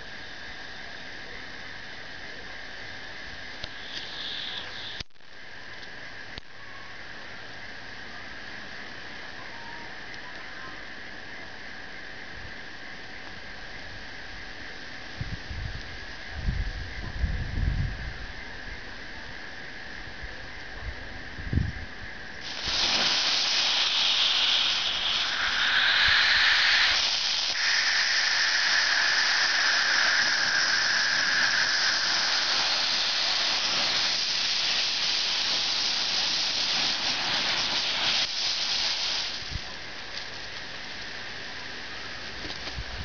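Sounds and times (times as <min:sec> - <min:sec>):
rocket motor hissing: 0:03.2 - 0:05.2, 0:22.4 - 0:42.6.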